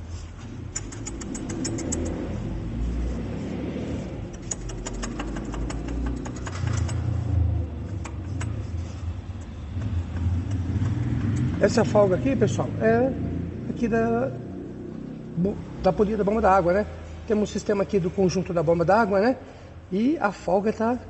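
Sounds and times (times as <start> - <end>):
car engine low rumble: 0.1 - 19.2
rapid metallic clicking: 0.6 - 2.4, 4.2 - 11.7.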